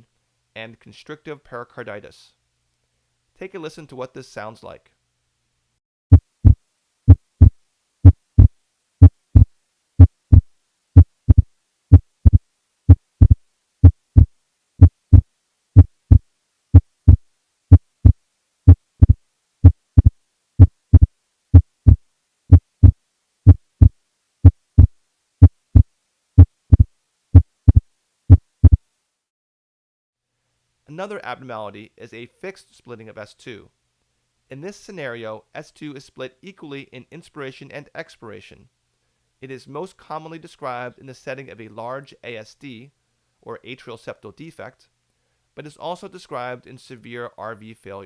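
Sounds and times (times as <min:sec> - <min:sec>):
heartbeat lub-dub: 0:06.1 - 0:16.2, 0:16.8 - 0:28.8.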